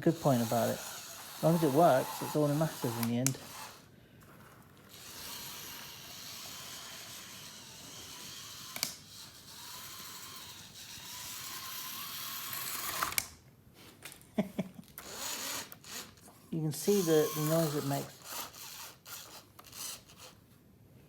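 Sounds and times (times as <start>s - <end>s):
model train motor whirring: 0.0s - 13.4s, 15.0s - 20.5s
sharp click: 8.7s - 9.0s.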